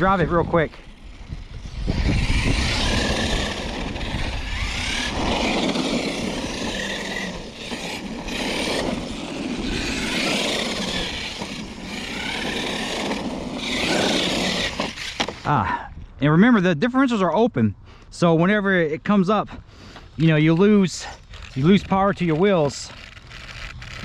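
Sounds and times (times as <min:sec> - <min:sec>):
electric motor whine: 0:00.0 - 0:15.5
tyre and drivetrain noise: 0:00.0 - 0:15.8, 0:19.8 - 0:24.0.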